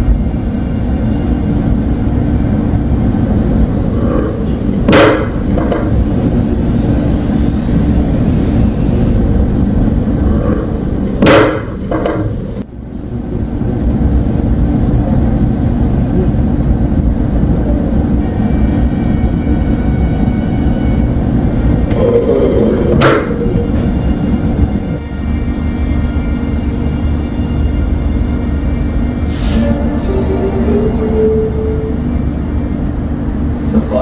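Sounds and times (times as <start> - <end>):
steady low rumble: 3.2 - 9.3, 25.0 - 34.0.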